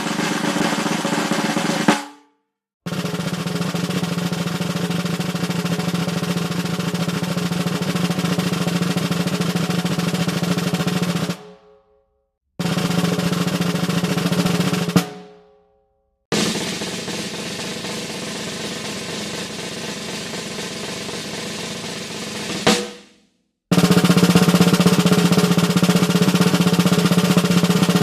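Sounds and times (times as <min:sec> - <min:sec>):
accented drum hit: 0:00.0 - 0:02.2, 0:12.6 - 0:15.4, 0:16.3 - 0:28.0
drum rolls: 0:00.0 - 0:02.2, 0:02.9 - 0:11.6, 0:12.6 - 0:15.4, 0:16.3 - 0:23.1, 0:23.7 - 0:28.0.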